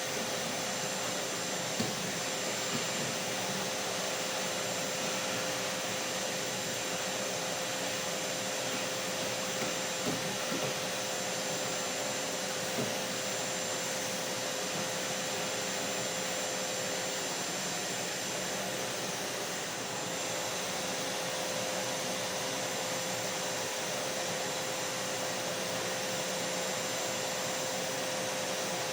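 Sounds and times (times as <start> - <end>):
vacuum cleaner motor running: 0.0 - 28.9.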